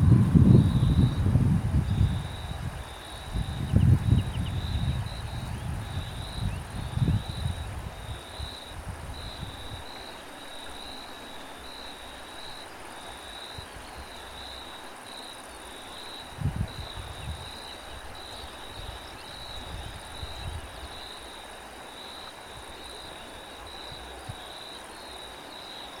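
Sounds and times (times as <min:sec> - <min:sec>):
wind rumbling on microphone: 0:00.0 - 0:10.0, 0:16.2 - 0:21.1
crickets chirping: 0:00.0 - 0:26.0.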